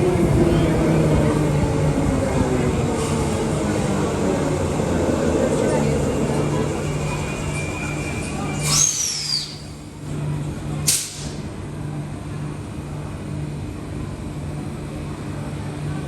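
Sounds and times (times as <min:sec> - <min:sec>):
train low hum: 0:00.0 - 0:16.0.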